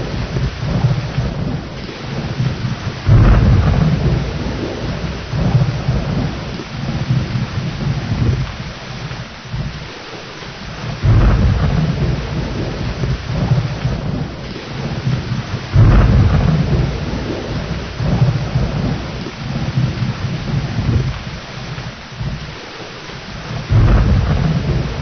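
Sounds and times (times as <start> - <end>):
rolling thunder: 0.0 - 10.0, 10.6 - 22.6, 23.2 - 25.0
heavy rain: 0.0 - 25.0.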